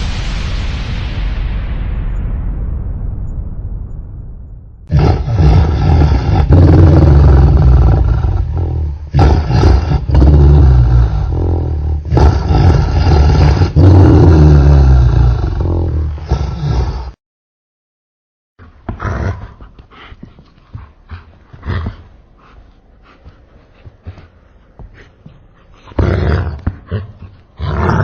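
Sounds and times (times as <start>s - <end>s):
slowed dog growls and barks: 4.9s - 17.2s, 18.6s - 28.0s.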